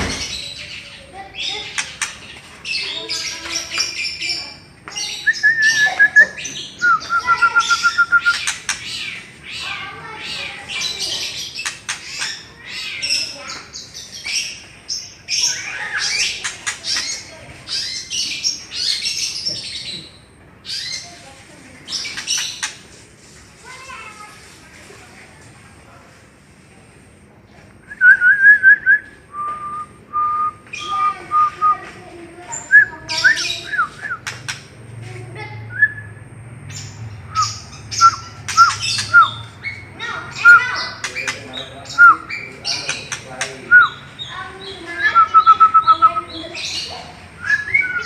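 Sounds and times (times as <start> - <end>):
songbird singing: 0.0 - 22.8, 27.8 - 48.0
bird singing whistles: 5.2 - 8.5, 27.9 - 31.9, 32.5 - 34.3, 35.7 - 36.2, 37.3 - 39.8, 41.9 - 42.5, 43.7 - 44.0, 45.0 - 46.4, 47.4 - 48.0
bird harsh rasping notes: 35.4 - 48.0.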